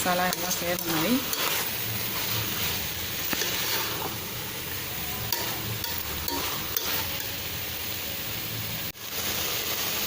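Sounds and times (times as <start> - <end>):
vegetables sizzling in a pan: 0.0 - 10.0
spoon stirring: 0.1 - 4.5
spoon clicking against pan: 5.3 - 7.4.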